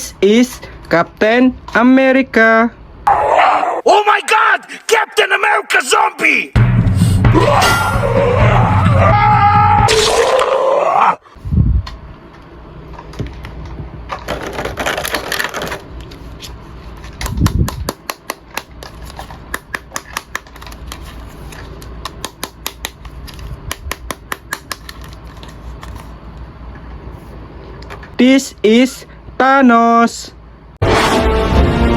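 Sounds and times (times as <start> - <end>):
packaging rustling: 14.2 - 17.3, 18.7 - 22.1, 24.6 - 26.2
sharp plastic clicks: 17.2 - 21.1, 21.8 - 25.4.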